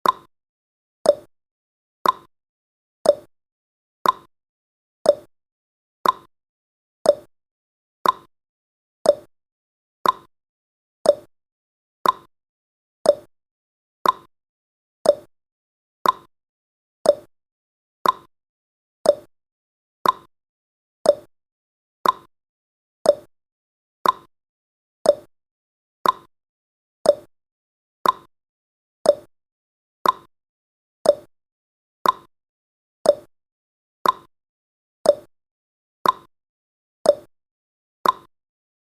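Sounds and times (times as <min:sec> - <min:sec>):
countdown timer ticking: 0:01.1 - 0:01.3, 0:05.1 - 0:05.3, 0:07.1 - 0:07.3, 0:09.1 - 0:09.3, 0:11.1 - 0:11.3, 0:13.1 - 0:13.3, 0:15.1 - 0:15.3, 0:17.1 - 0:17.3, 0:18.0 - 0:18.3, 0:19.1 - 0:19.3, 0:21.1 - 0:21.3, 0:23.1 - 0:23.3, 0:25.1 - 0:25.3, 0:26.0 - 0:26.3, 0:27.1 - 0:27.3, 0:28.0 - 0:28.3, 0:29.1 - 0:29.3, 0:30.0 - 0:30.3, 0:31.1 - 0:31.3, 0:32.0 - 0:32.3, 0:33.1 - 0:33.3, 0:34.0 - 0:34.3, 0:35.1 - 0:35.3, 0:36.0 - 0:36.3, 0:37.1 - 0:37.3, 0:38.0 - 0:38.3.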